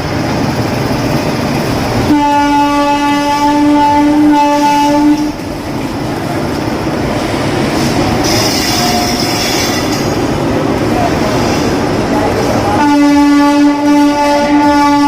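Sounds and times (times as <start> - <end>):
train wheels rumbling on rails: 0.0 - 15.0
train horn: 2.1 - 5.4, 8.2 - 10.2, 12.6 - 15.0
high wheel squeal: 7.8 - 10.2.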